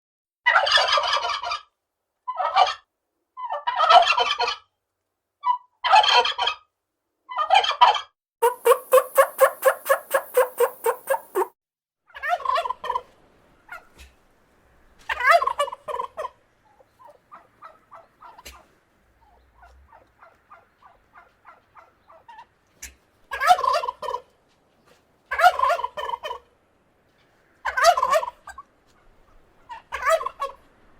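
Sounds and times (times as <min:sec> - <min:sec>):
turkey gobbling: 0:00.5 - 0:01.6, 0:05.9 - 0:06.6, 0:07.3 - 0:11.5, 0:12.2 - 0:14.2, 0:15.1 - 0:24.3, 0:25.3 - 0:26.5, 0:27.6 - 0:28.7, 0:29.6 - 0:30.6.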